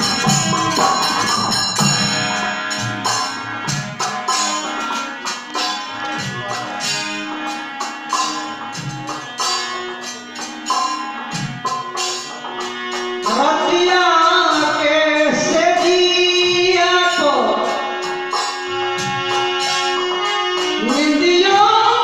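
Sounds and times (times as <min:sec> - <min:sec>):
instrumental held notes: 0:00.0 - 0:22.0
light percussion: 0:00.0 - 0:22.0
person singing: 0:12.2 - 0:22.0.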